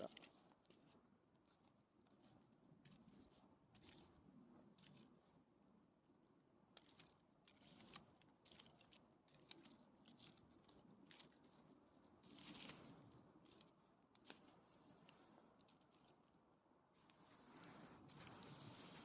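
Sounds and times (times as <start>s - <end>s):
faint clicks and crackles: 0.0s - 19.0s
soft hiss: 17.0s - 19.0s.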